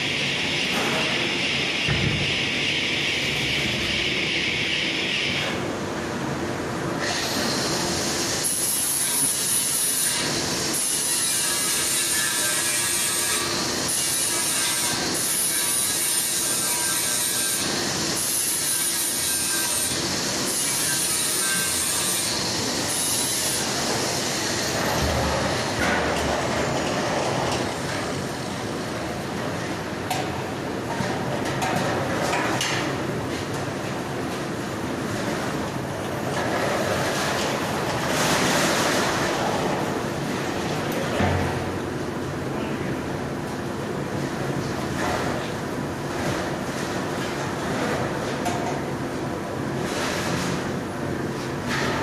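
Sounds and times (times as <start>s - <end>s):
high thin whine: 0.0s - 5.9s.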